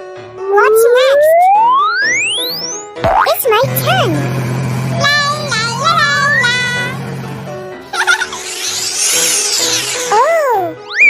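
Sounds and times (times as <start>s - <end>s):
cartoon background music: 0.1s - 11.0s
squeaky rising sound effect: 3.6s - 10.4s.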